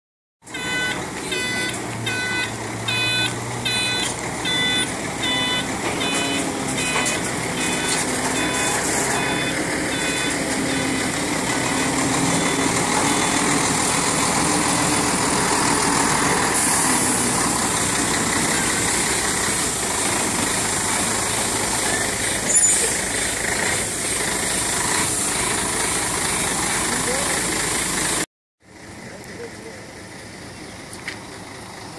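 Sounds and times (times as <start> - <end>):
truck reversing alarm beeps: 0.4 - 19.5, 20.2 - 23.4
truck engine running: 0.4 - 31.9.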